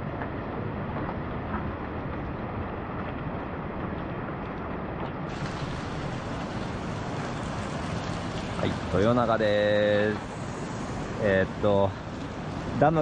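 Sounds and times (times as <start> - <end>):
swollen river rushing: 5.2 - 13.0.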